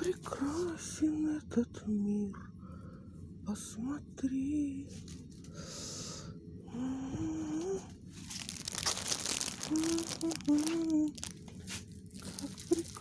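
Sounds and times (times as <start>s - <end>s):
woman humming: 6.7s - 7.9s, 9.4s - 11.3s, 12.2s - 13.0s
plastic bags crinkling and tearing: 8.2s - 13.0s.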